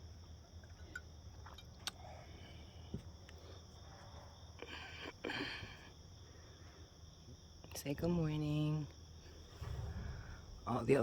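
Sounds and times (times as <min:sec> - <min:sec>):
insects chirping: 0:00.0 - 0:11.0
hissing rustle: 0:09.5 - 0:10.8.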